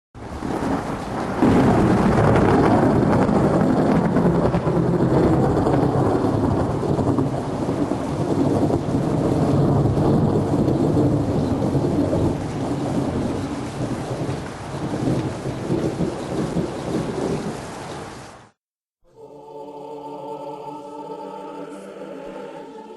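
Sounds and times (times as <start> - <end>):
rumbling thunder: 0.2 - 18.4
rain: 0.2 - 18.6.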